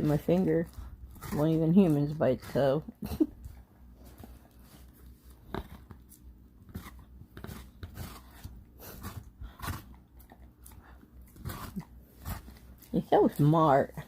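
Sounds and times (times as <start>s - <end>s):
dog chewing watermelon: 0.0s - 14.0s.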